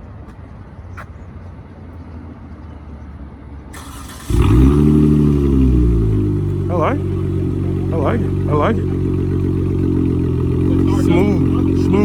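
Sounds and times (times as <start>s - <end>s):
starter whirr: 3.8s - 5.8s
car engine firing loudly: 3.8s - 12.0s
low steady rumble: 4.6s - 12.0s.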